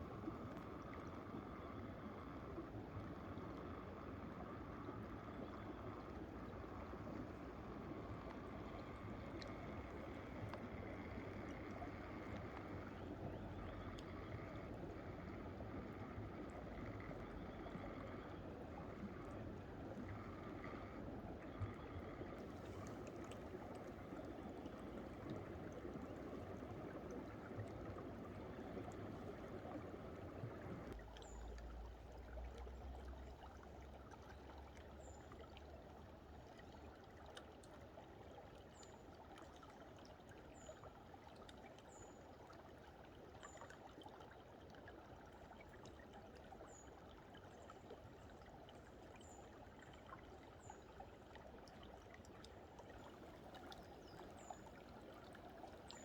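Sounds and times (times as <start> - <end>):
stream trickling under ice: 0.0 - 56.0.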